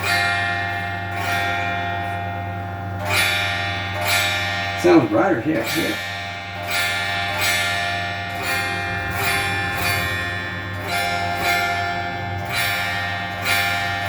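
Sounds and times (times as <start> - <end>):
steady low hum: 0.0 - 14.0
electric guitar strummed chords: 8.3 - 13.6.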